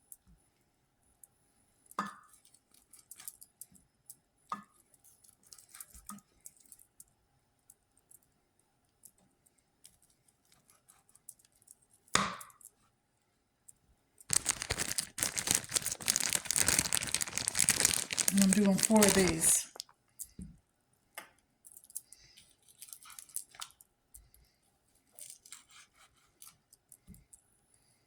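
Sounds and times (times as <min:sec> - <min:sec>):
dense crinkling: 0:14.3 - 0:19.8.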